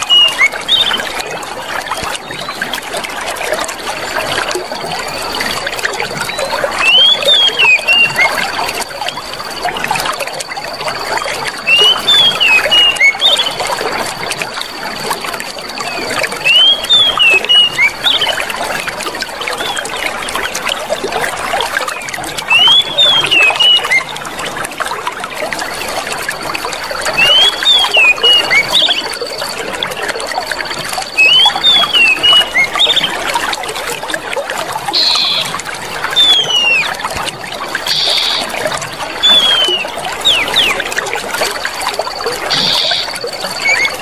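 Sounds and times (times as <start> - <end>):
bird chirping: 0.0 - 1.2, 11.7 - 13.6, 15.8 - 18.4, 27.2 - 29.4, 31.0 - 33.2, 34.9 - 35.6, 36.2 - 37.0, 37.8 - 38.6, 39.2 - 40.8, 42.5 - 44.0
stream water gurgling: 0.0 - 44.0
thin high tone: 37.7 - 40.8, 42.0 - 44.0.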